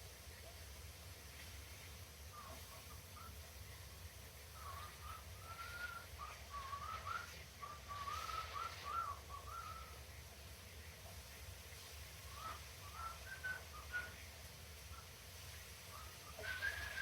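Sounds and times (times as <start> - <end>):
cockatiel whistling a tune: 4.6 - 10.0, 12.3 - 14.3, 15.9 - 17.0.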